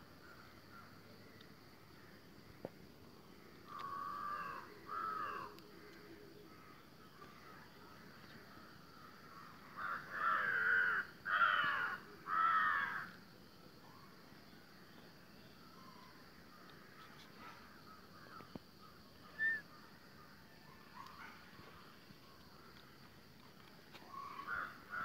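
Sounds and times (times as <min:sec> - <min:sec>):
bird cawing: 0:03.7 - 0:05.6, 0:09.8 - 0:13.1.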